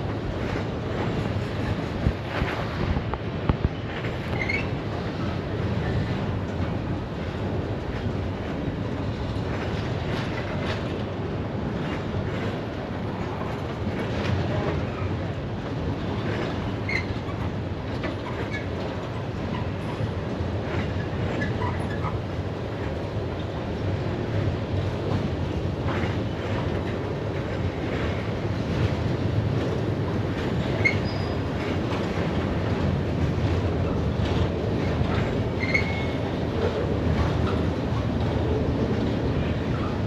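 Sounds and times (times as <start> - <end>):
freight cars rumbling on rails: 0.0 - 40.0
wheel squeals: 4.3 - 4.7, 16.9 - 17.2, 30.7 - 31.5, 35.6 - 36.2.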